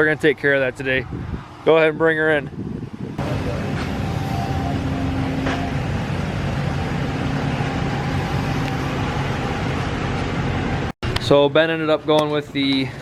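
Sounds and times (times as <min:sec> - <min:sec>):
engine idling: 0:03.2 - 0:10.9.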